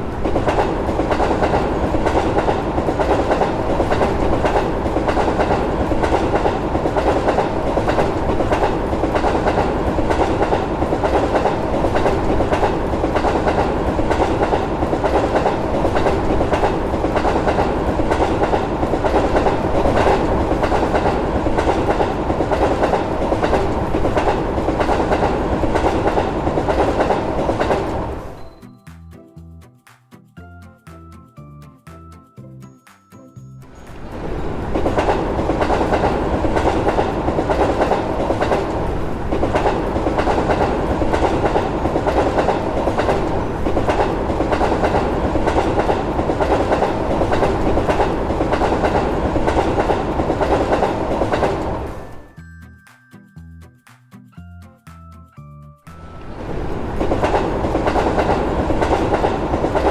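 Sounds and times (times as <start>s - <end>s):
train wheels clacking over rails: 0.0s - 28.5s, 33.7s - 52.2s, 56.2s - 59.9s.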